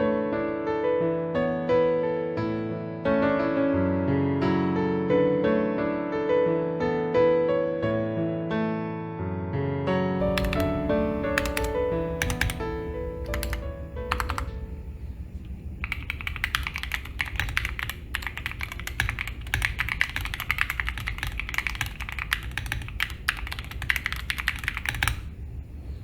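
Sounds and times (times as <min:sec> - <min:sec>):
light piano-like music: 0:00.0 - 0:15.3
mechanical keyboard typing: 0:10.2 - 0:25.3.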